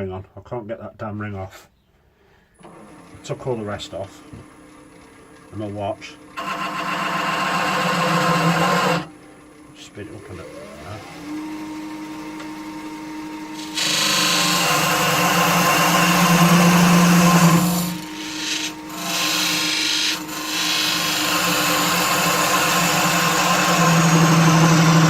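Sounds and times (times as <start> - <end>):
lathe running: 5.2 - 25.0
tool scraping spinning wood: 6.4 - 9.1, 13.6 - 25.0.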